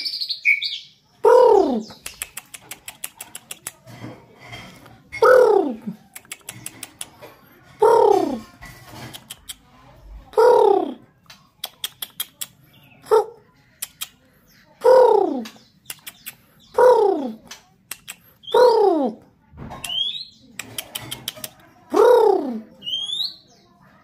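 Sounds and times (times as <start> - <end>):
short sharp clicks: 15.8 - 16.4, 17.5 - 18.3.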